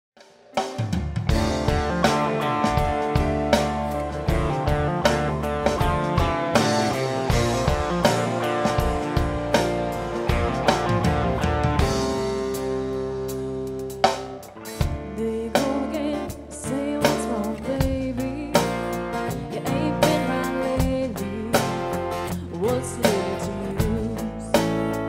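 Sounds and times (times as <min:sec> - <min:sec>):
guitars over a steady beat: 0:00.6 - 0:25.0
strong drum hits: 0:00.8 - 0:12.5.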